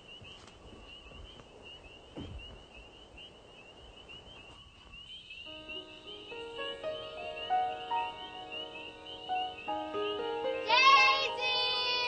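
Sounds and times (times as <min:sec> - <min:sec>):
crickets chirping: 0:00.0 - 0:12.0
soft thump: 0:02.2 - 0:02.6
music: 0:05.5 - 0:12.0.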